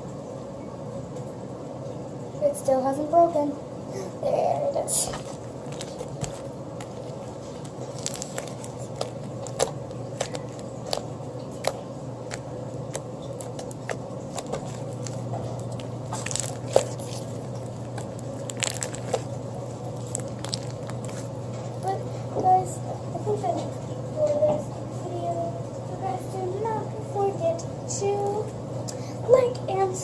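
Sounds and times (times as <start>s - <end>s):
crunchy slime crackling and popping: 5.0s - 22.0s.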